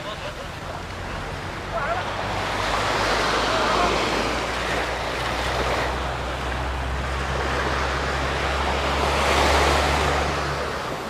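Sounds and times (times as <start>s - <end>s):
low engine hum: 0.0s - 11.0s
surf washing onto beach: 0.0s - 11.0s.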